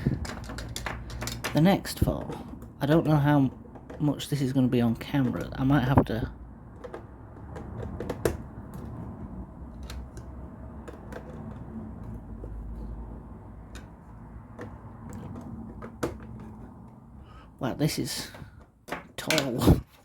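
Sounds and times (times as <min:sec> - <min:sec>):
plastic bricks clicking together: 0:00.0 - 0:02.2.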